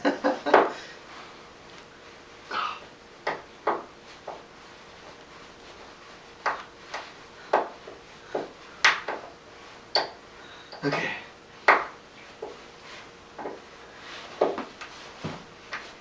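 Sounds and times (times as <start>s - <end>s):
soft rustle: 4.0s - 7.2s, 13.9s - 16.0s
hand tools clicking and tapping: 6.4s - 9.3s, 9.9s - 11.0s.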